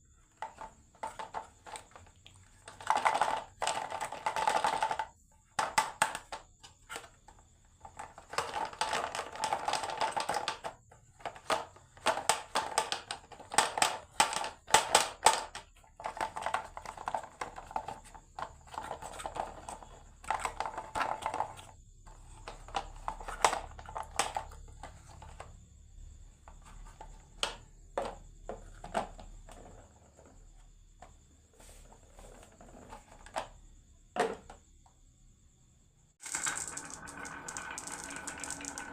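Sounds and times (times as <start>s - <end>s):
marbles rolling down wooden run: 36.2s - 38.9s.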